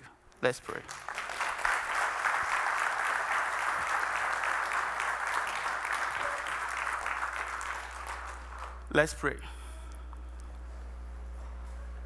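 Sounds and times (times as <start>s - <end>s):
congregation applauding: 0.8s - 8.9s.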